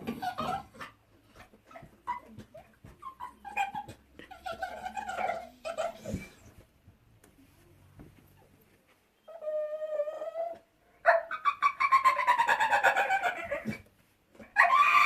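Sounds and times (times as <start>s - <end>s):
dog whining high-pitched: 9.2s - 10.6s.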